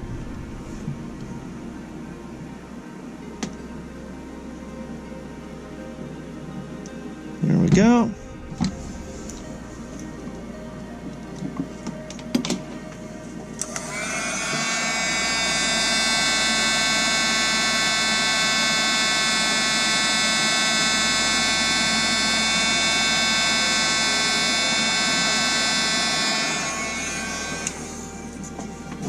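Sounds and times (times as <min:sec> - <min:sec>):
heat gun fan whine: 0:07.4 - 0:29.0.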